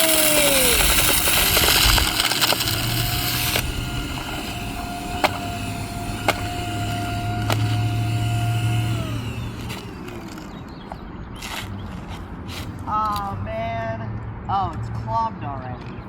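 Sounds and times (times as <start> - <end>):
sand hissing through vacuum: 0.0 - 10.4
sharp ticks: 0.0 - 13.3
vacuum motor whining: 0.0 - 13.4.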